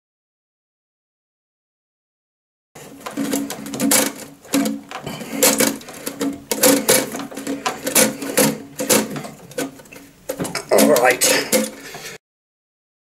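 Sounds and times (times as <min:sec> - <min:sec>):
creaking squeaky scrapes: 0:02.8 - 0:12.2
plastic cistern fittings clicking: 0:02.9 - 0:12.2.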